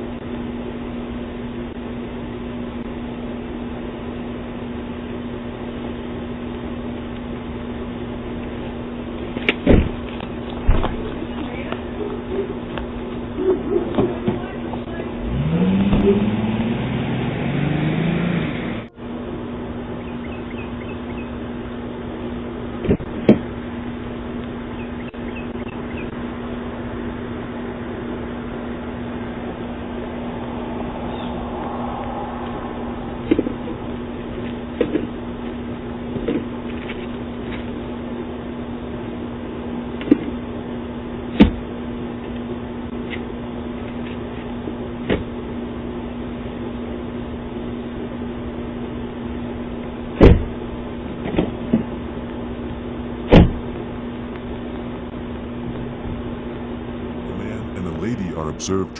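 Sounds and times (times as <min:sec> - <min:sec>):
car engine revving: 0:15.2 - 0:18.9.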